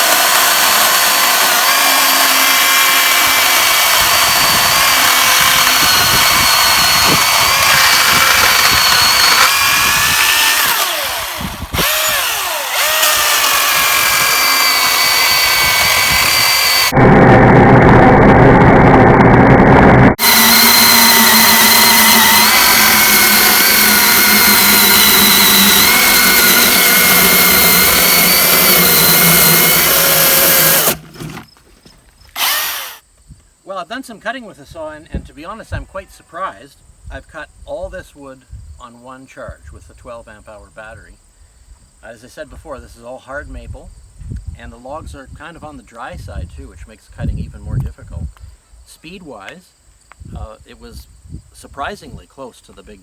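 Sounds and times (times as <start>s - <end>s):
cordless chainsaw cutting logs: 0.0s - 16.9s, 20.2s - 31.4s, 32.4s - 33.0s
loud low saw noise: 0.0s - 31.0s, 32.4s - 33.0s.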